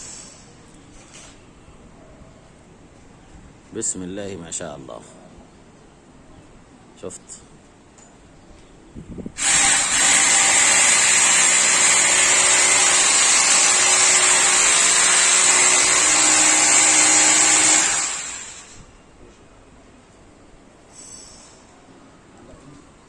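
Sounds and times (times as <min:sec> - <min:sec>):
power tool running: 0:09.4 - 0:18.9.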